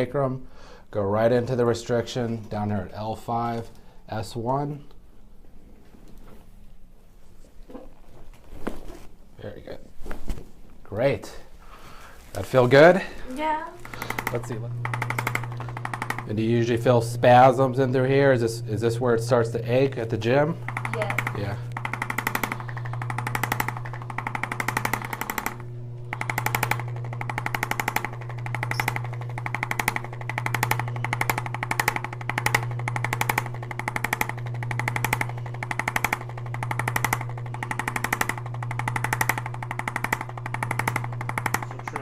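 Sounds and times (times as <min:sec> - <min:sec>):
low motor hum: 0:13.0 - 0:42.0
percussion instrument tapping rapidly: 0:20.6 - 0:42.0.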